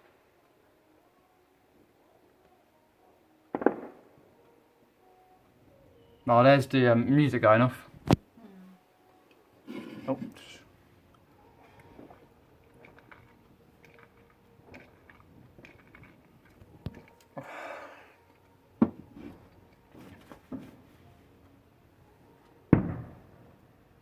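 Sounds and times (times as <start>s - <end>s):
distant fireworks bangs: 3.5s - 4.2s, 22.7s - 23.6s
faint firework crackles: 3.5s - 4.6s, 22.7s - 23.8s.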